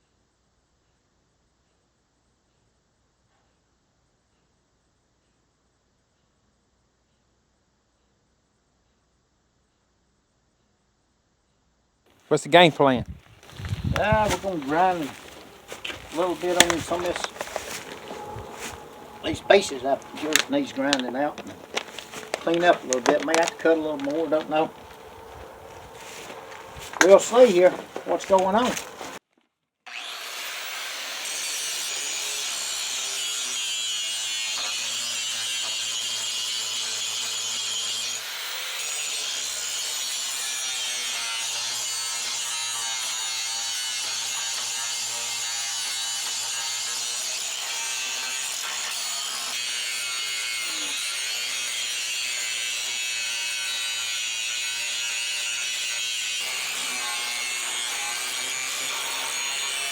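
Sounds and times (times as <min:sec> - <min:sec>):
power grinder grinding metal: 0:13.4 - 0:29.2, 0:29.9 - 0:59.9.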